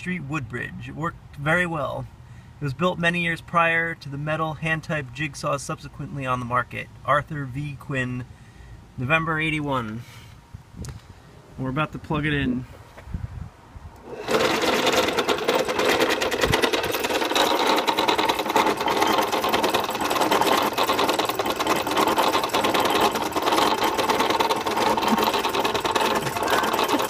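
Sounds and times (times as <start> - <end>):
electric jigsaw clattering: 14.0 - 27.0.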